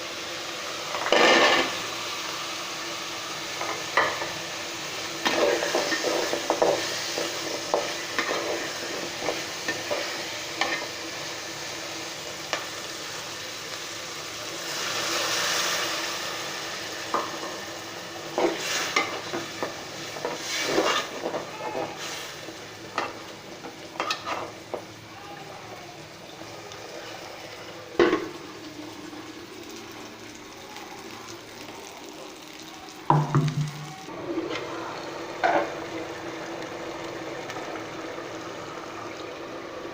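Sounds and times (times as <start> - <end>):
food sizzling in hot oil: 0.0 - 39.9
spatula scraping a pan: 20.1 - 22.3, 24.0 - 24.5.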